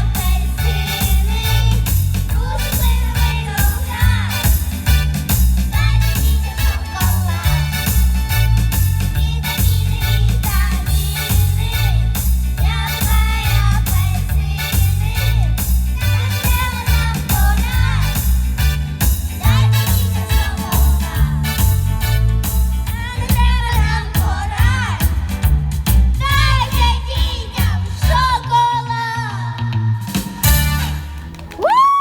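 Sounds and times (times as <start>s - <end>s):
children singing: 0.0s - 4.6s, 12.6s - 18.3s, 19.4s - 21.8s, 22.9s - 25.1s
pop song with pulsing bass: 0.0s - 32.0s.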